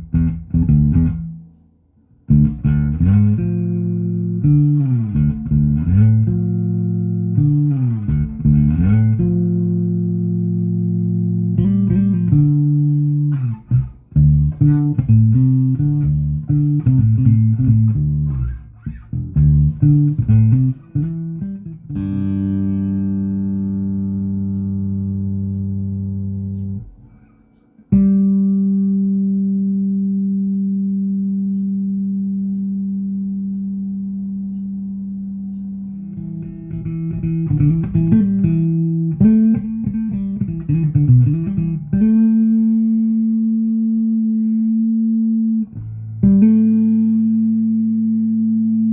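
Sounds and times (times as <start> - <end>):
bass guitar notes: 0.0 - 48.9.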